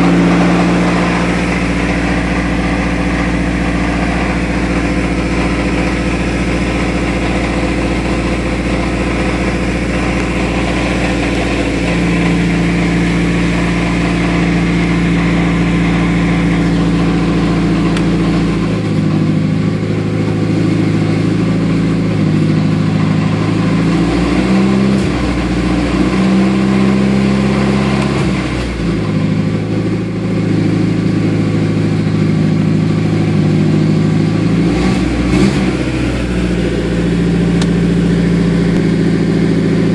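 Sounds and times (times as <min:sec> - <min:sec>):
car engine idling and revving: 0:00.0 - 0:39.9.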